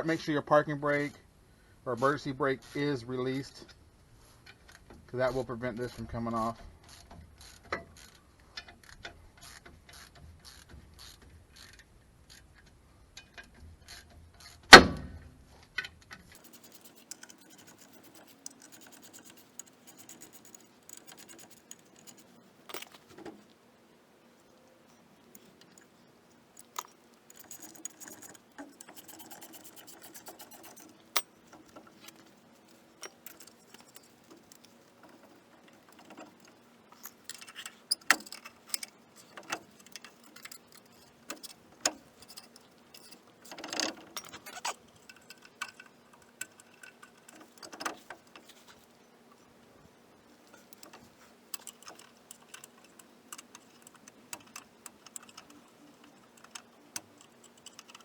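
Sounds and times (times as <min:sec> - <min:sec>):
hand ratchet clicking: 0:16.4 - 0:23.6, 0:26.6 - 0:48.7, 0:50.5 - 0:58.0
metal hand tools clinking: 0:16.4 - 0:23.6, 0:24.5 - 0:48.8.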